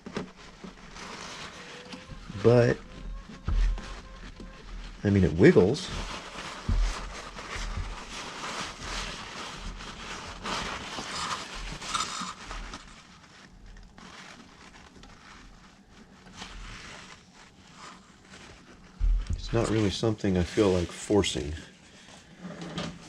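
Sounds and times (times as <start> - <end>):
hose fitting scraping and knocking: 11.1 - 12.9.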